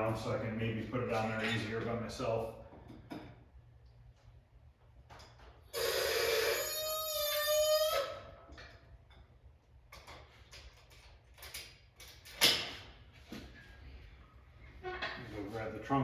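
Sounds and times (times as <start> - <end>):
hoist arm squealing: 5.7 - 8.4.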